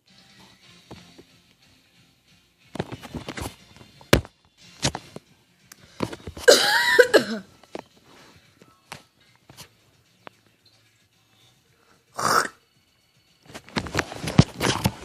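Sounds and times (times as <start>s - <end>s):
man coughing: 6.4s - 7.5s.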